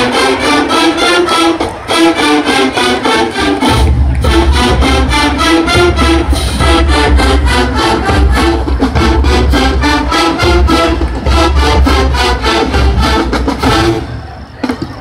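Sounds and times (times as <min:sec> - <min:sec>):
marching band brass tune: 0:00.0 - 0:15.0
heavy bass drums: 0:03.6 - 0:15.0.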